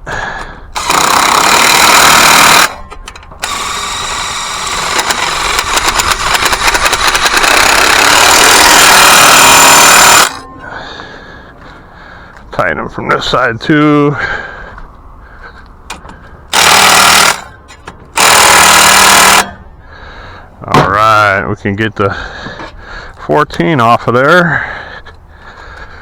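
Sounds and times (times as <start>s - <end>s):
rapid hammering clicks: 0.8s - 2.8s, 3.4s - 10.4s, 16.5s - 17.5s, 18.2s - 19.5s
power wrench running: 0.8s - 10.4s, 16.5s - 19.6s.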